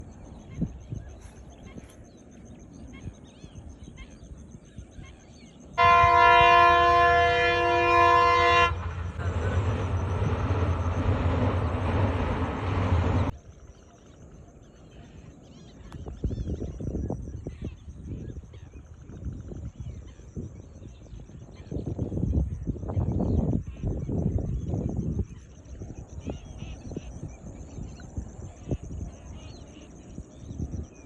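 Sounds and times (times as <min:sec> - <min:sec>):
loud multi-tone horn blast: 0:05.8 - 0:13.2
loud rushing rumble: 0:08.6 - 0:13.4.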